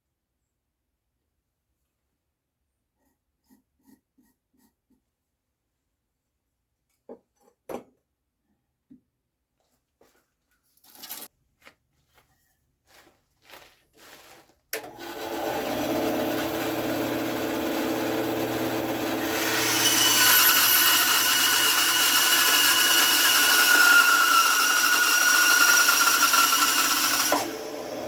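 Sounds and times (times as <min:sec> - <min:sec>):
handling sounds: 0:09.5 - 0:14.8
power tool running: 0:14.8 - 0:28.0.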